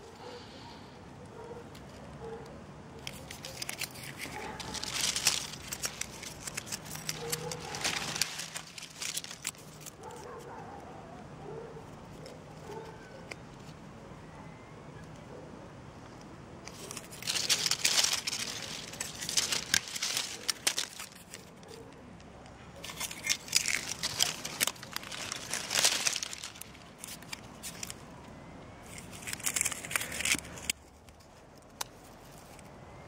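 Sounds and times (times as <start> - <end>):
dry leaves and twigs crackling: 3.0 - 10.8, 11.8 - 13.8, 16.0 - 33.0.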